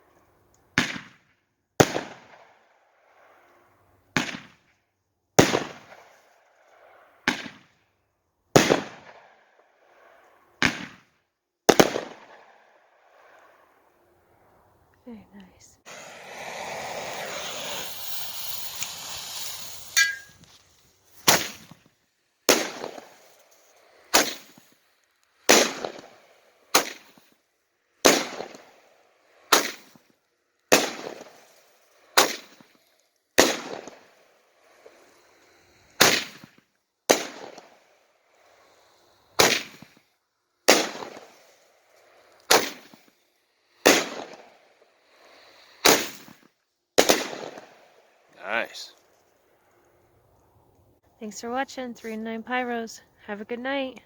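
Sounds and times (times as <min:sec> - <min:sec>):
firework cake sharp reports: 0:15.1 - 0:21.7, 0:48.4 - 0:49.0, 0:51.2 - 0:54.0.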